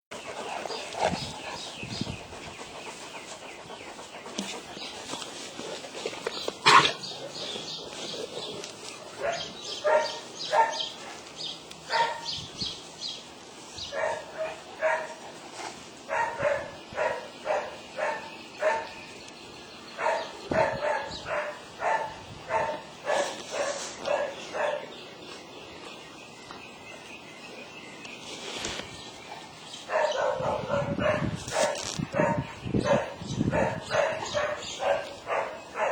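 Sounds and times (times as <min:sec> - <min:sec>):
dogs barking: 0:06.6 - 0:11.2, 0:11.8 - 0:12.4, 0:13.9 - 0:15.4, 0:16.0 - 0:19.0, 0:20.0 - 0:24.9, 0:29.8 - 0:35.9.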